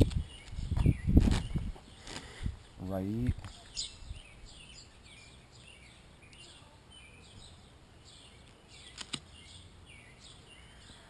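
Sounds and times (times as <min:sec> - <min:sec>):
background hiss: 0:00.0 - 0:11.0
sharp clicks: 0:08.4 - 0:09.3.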